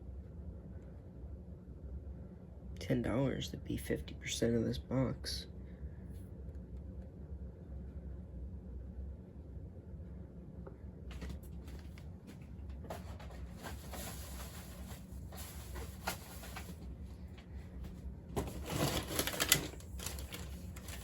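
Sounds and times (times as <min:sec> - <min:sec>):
low steady hum: 0:00.0 - 0:21.0
plastic and card clicks and rustles: 0:18.4 - 0:21.0.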